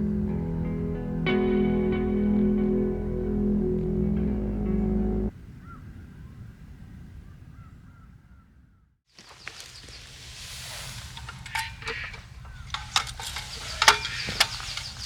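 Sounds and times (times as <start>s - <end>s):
birds calling: 4.2s - 6.5s, 7.2s - 15.0s
steady rushing hiss: 9.2s - 15.0s.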